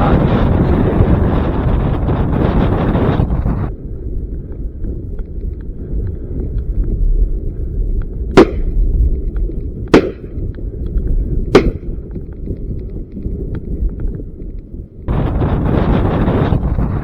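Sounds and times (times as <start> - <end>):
wind buffeting microphone: 0.0 - 17.0
shotgun shots: 8.4 - 8.7, 10.0 - 10.3, 11.6 - 11.8.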